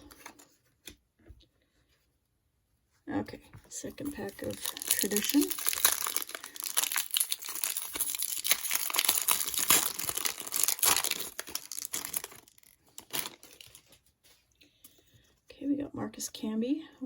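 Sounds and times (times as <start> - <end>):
wrapper crinkling and tearing: 4.0 - 14.1.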